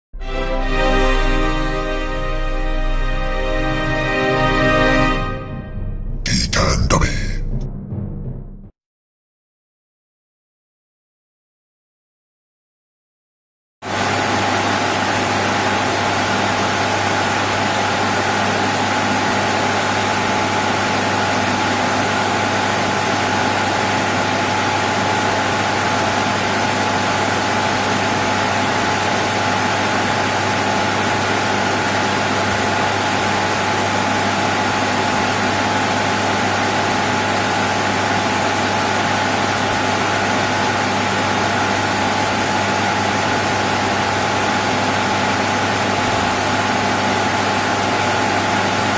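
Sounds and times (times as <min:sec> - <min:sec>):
cooling fans whirring: 0:13.9 - 0:48.9.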